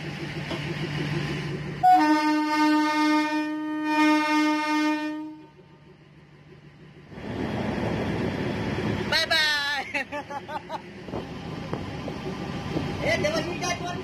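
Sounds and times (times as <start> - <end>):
engine rumbling: 0.0 - 14.0
locomotive horn blast: 1.8 - 5.6.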